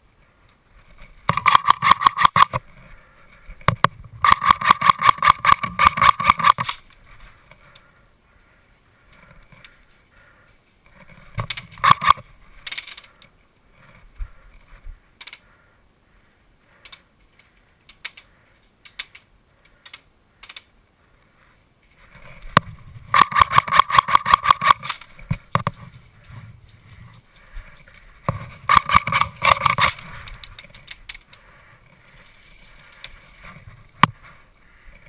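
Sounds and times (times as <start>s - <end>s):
airsoft gun firing bursts: 1.3s - 2.6s, 4.2s - 6.7s, 11.8s - 12.2s, 23.1s - 24.9s, 28.7s - 30.0s.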